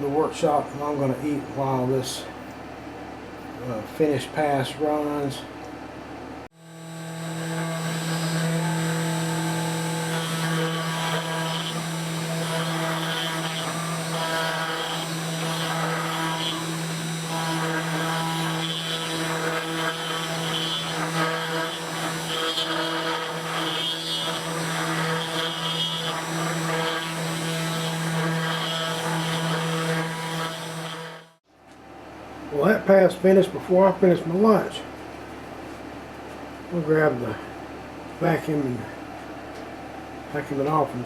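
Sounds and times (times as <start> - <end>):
router spindle running: 6.5 - 31.4.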